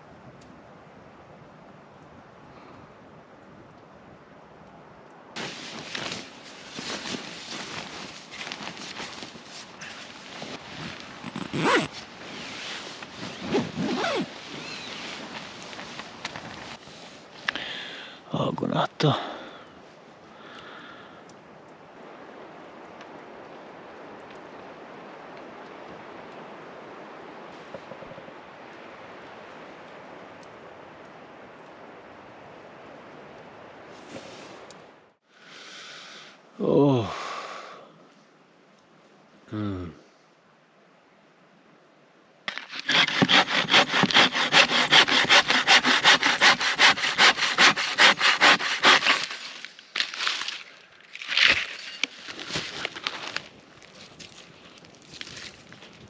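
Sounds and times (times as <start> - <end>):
wind rushing through trees: 0.0 - 50.0
hand saw cutting wood: 42.5 - 50.1.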